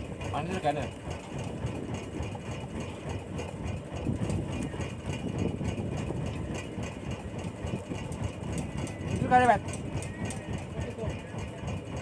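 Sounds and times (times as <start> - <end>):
boat engine running at low revs: 0.0 - 12.0.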